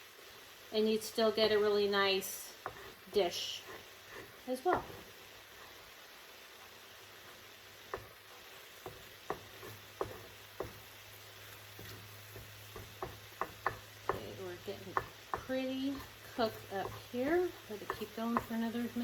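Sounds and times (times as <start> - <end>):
food sizzling in a pan: 0.0 - 19.0
utensil scraping and knocking pan: 2.6 - 5.1, 8.8 - 10.9, 11.8 - 19.0.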